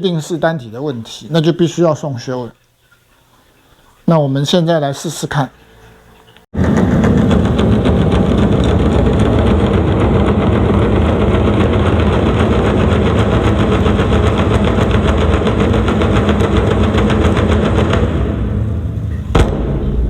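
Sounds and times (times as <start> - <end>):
loud bass test signal: 6.6 - 20.0.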